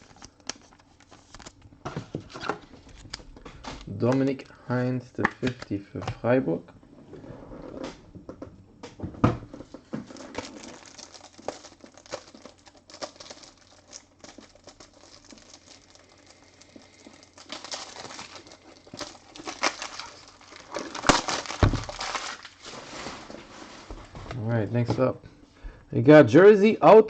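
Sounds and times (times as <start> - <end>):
trading card packaging rustling: 0.0 - 4.4, 9.8 - 23.8.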